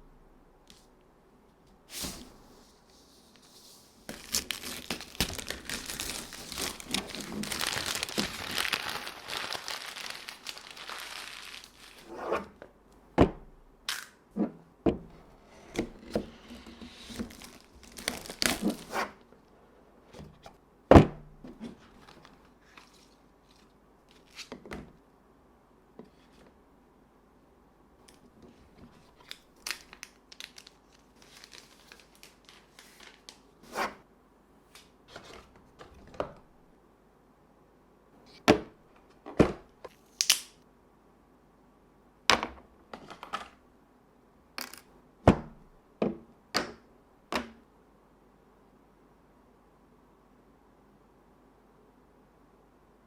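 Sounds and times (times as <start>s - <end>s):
plastic wrapping crinkling and tearing: 4.1s - 12.1s, 17.1s - 18.9s, 29.1s - 33.5s.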